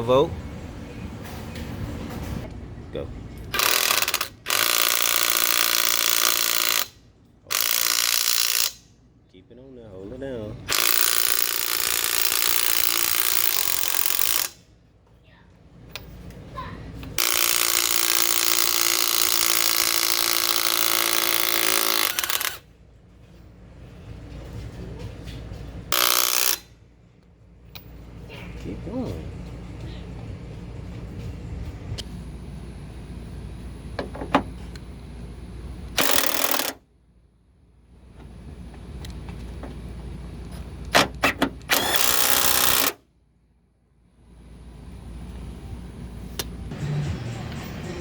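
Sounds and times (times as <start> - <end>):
impact wrench hammering: 3.5 - 8.9, 10.7 - 14.6, 17.2 - 22.6, 25.9 - 26.7, 36.0 - 36.8, 40.9 - 43.0.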